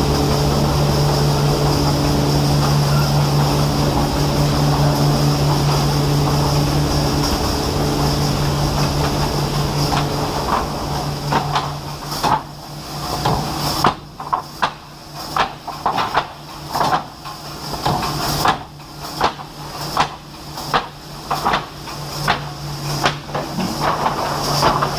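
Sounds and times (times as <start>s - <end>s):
wood-processing machinery humming: 0.0s - 24.9s
sharp knocks and clatter: 0.2s - 24.9s.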